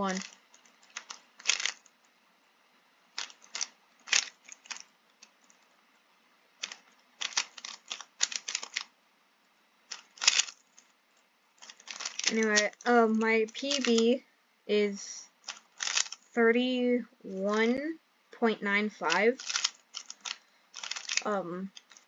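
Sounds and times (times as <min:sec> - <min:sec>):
puzzle cube plastic clicks: 0:00.0 - 0:02.0, 0:03.1 - 0:05.7, 0:06.6 - 0:08.9, 0:09.9 - 0:10.9, 0:11.6 - 0:14.1, 0:15.4 - 0:16.4, 0:17.4 - 0:17.8, 0:19.0 - 0:22.0.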